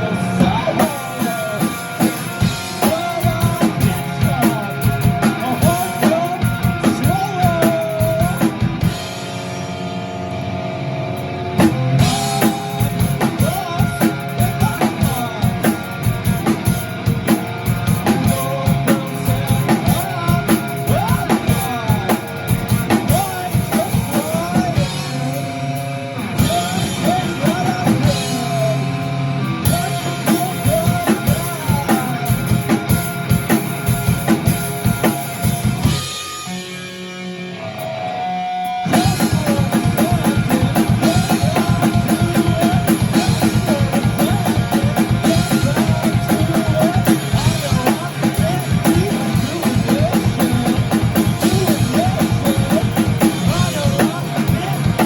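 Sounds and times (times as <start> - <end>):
person singing: 0.0 - 9.7, 11.5 - 55.0
drum kit: 0.0 - 55.0
guitar: 0.0 - 55.0.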